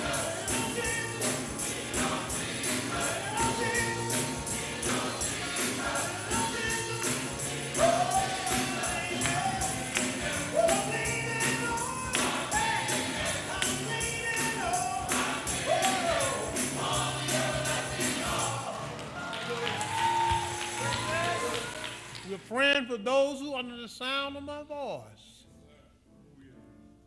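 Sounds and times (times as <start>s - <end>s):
tambourine shaking: 0.0s - 22.1s
choir singing: 0.0s - 22.3s.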